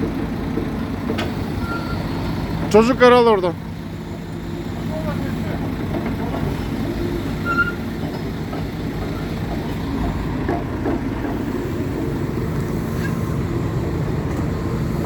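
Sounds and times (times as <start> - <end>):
diesel engine low rumble: 0.0 - 15.0.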